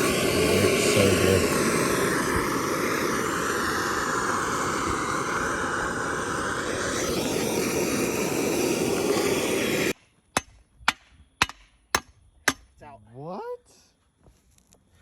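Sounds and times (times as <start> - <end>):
gas torch hissing: 0.0 - 10.0.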